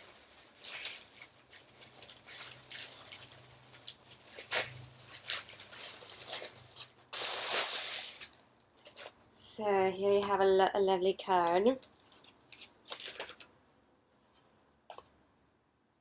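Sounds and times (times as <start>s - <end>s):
packaging rustling: 0.0s - 9.2s, 11.8s - 13.5s.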